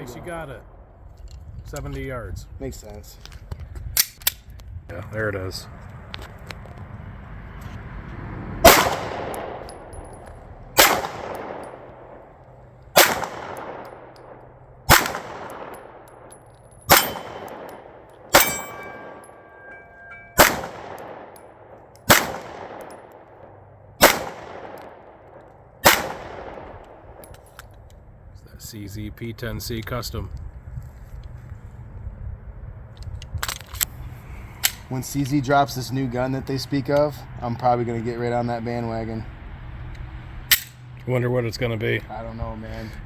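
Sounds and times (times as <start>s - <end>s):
pistol shots with echo: 8.6s - 10.0s, 10.7s - 12.3s, 12.9s - 16.3s, 16.9s - 27.3s.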